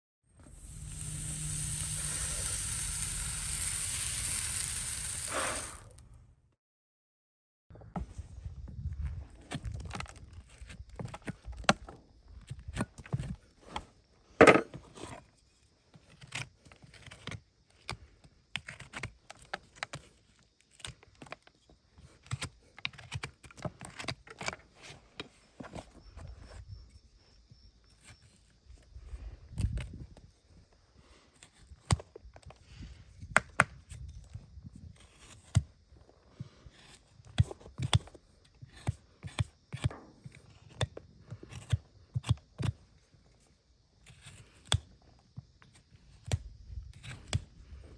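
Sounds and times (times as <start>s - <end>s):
hand tools scraping hoof: 0.4s - 6.0s.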